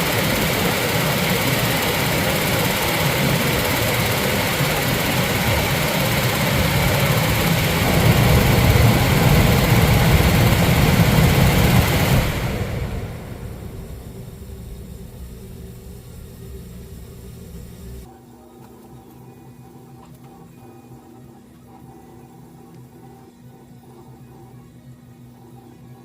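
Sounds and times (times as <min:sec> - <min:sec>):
machine running loudly: 0:00.0 - 0:18.1.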